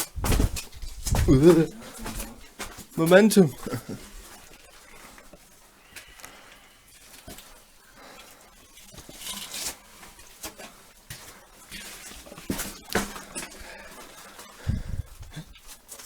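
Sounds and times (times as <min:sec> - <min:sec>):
people clambering over rock: 0:00.0 - 0:05.3, 0:12.5 - 0:15.6.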